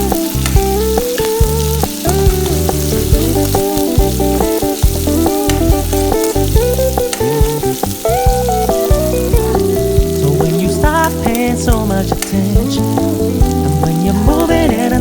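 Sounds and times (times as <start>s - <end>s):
food frying in hot oil: 0.0s - 15.0s
instrumental pop music: 0.0s - 15.0s.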